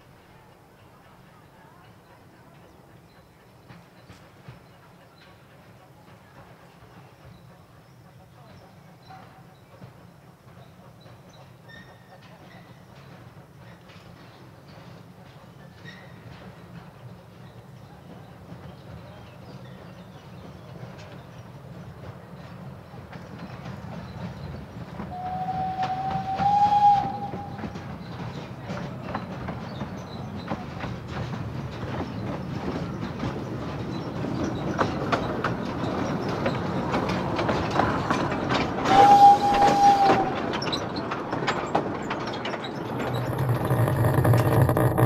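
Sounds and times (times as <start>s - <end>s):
train wheels clicking over rail joints: 8.4s - 45.0s
train whistle: 25.1s - 27.9s, 38.8s - 40.5s.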